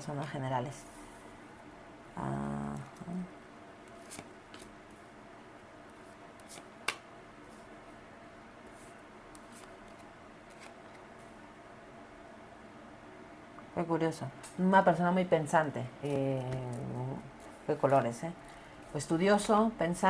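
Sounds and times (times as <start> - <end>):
cards clicking and rustling: 3.9 - 4.7, 9.3 - 11.0.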